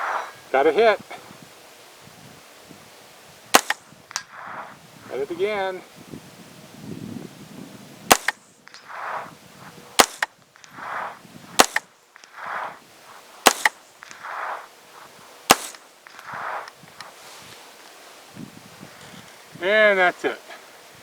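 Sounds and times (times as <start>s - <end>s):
rifle shots cracking: 3.5s - 4.8s, 8.1s - 9.3s, 9.9s - 16.8s
soft drawn-out echo: 3.5s - 4.8s, 8.1s - 16.7s.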